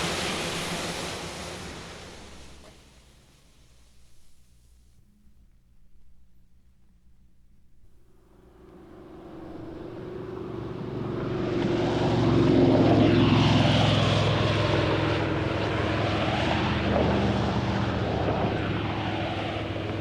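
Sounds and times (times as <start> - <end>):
propeller airplane passing: 0.0 - 3.3, 8.4 - 20.0.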